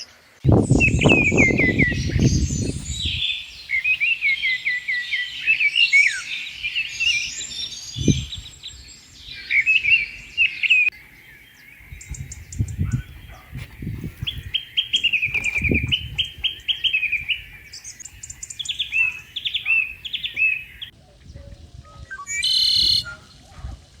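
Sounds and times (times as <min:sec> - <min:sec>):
small birds chirping: 0:00.0 - 0:24.0
loud bird call: 0:22.0 - 0:23.4.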